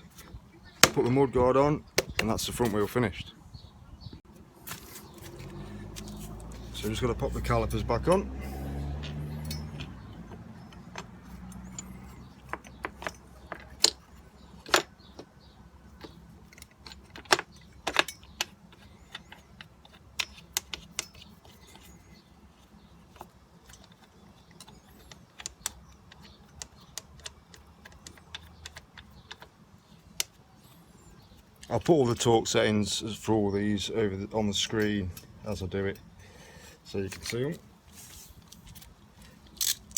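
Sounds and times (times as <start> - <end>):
metal clinks and taps: 8.0 - 15.3.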